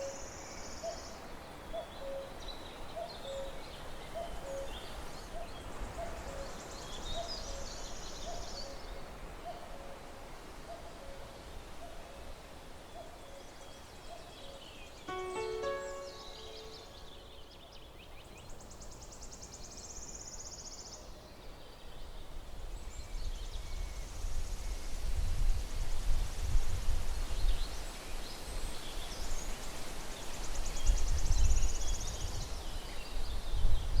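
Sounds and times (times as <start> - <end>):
wind rumble on microphone: 22.9 - 29.4, 30.5 - 34.0.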